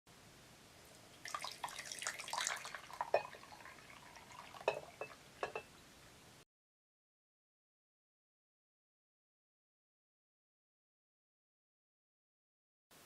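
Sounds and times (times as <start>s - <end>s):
liquid pouring: 0.8s - 5.8s.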